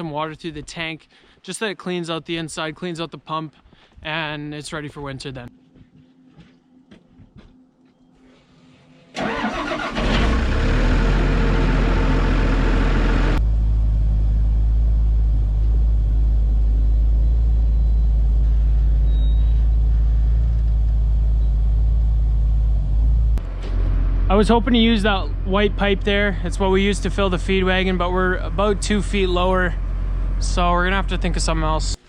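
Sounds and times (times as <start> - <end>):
engine starting and running: 9.1 - 32.0.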